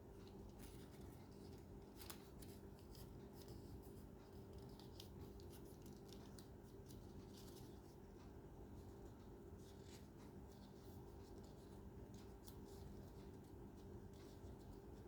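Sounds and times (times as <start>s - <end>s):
low steady hum: 0.0s - 15.0s
paper rustling and clicking: 0.2s - 15.0s.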